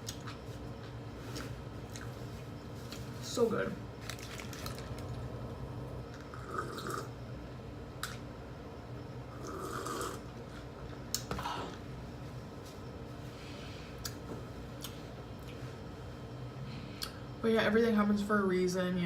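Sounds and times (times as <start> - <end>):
air conditioner hum: 0.0 - 19.0.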